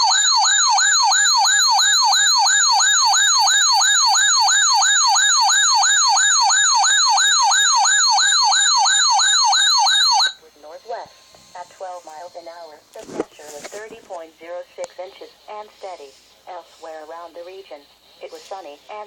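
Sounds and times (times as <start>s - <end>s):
siren-style radio alarm: 0.0s - 12.8s.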